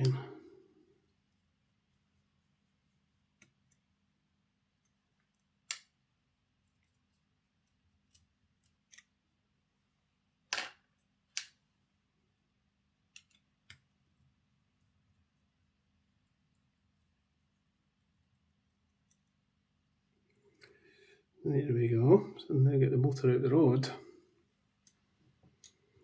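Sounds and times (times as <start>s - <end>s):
small parts clicking and tapping: 4.8s - 6.0s, 6.6s - 9.2s, 13.1s - 13.9s.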